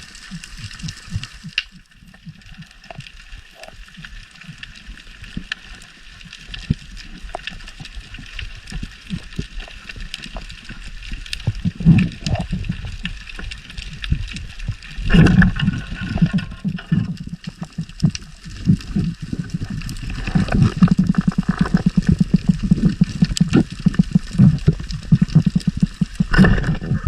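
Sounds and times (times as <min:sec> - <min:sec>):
water sloshing and gurgling: 0:00.0 - 0:27.0
knocks and ticks: 0:20.3 - 0:27.0.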